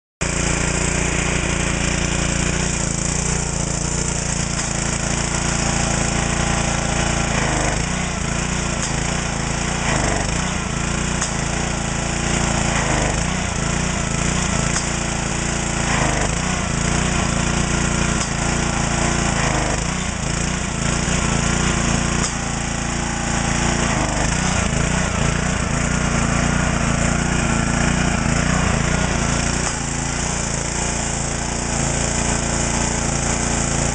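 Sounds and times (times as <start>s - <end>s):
pressure washer engine bogging: 0.2s - 33.9s
pressure washer pump spitting: 0.2s - 33.9s.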